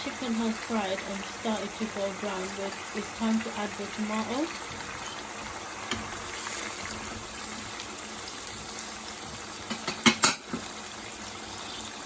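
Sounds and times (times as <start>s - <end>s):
chicken sizzling in hot oil: 0.0s - 12.0s
knocks against pan: 9.7s - 10.7s.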